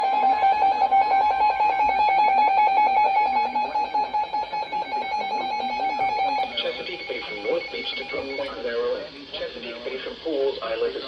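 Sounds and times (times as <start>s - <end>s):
two-tone fluttering alarm: 0.0s - 8.7s.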